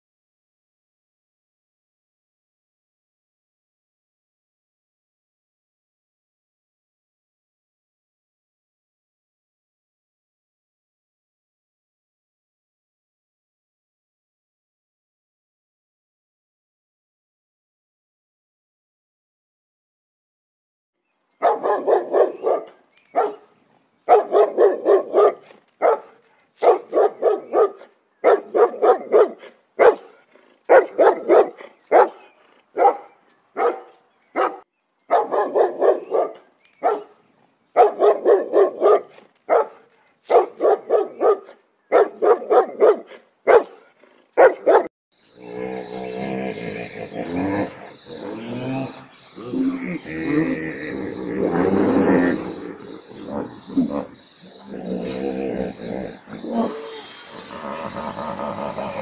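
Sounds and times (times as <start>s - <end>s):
dog barking: 21.4s - 23.5s, 24.1s - 37.2s, 37.8s - 44.9s.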